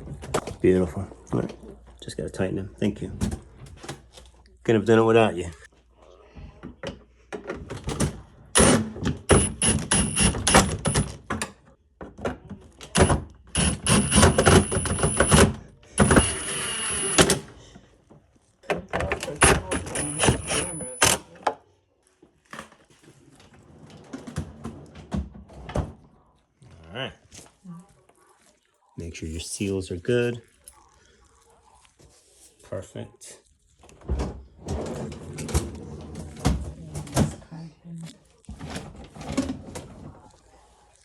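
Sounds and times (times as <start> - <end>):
power drill driving screws: 13.6 - 15.4, 16.0 - 17.4, 19.7 - 21.2.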